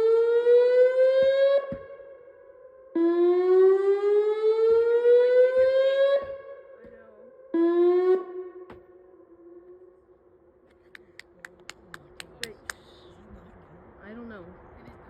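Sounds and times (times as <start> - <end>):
warning siren rising tone: 3.0 - 6.4, 7.6 - 8.6.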